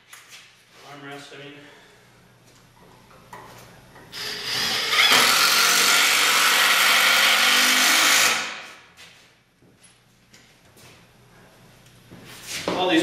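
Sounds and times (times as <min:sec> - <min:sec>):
power drill driving screw: 0:04.1 - 0:08.6.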